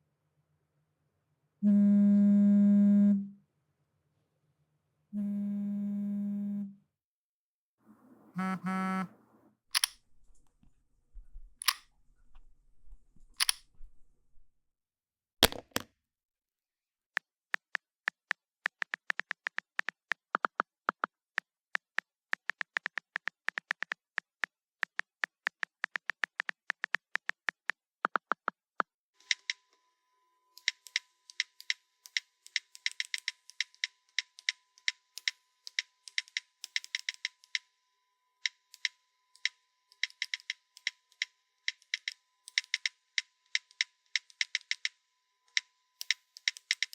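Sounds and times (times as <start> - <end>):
phone keypress clicks: 9.8 - 10.0, 11.6 - 11.8, 13.4 - 13.6, 38.5 - 43.0, 43.6 - 46.9.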